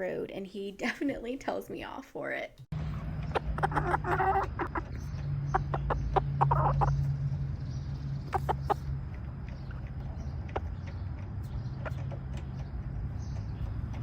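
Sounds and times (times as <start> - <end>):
rooster scolding clucks: 3.3 - 7.0.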